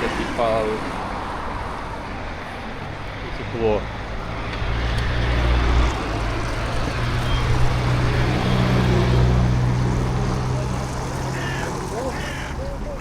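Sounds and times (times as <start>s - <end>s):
engine low hum: 3.9s - 13.0s.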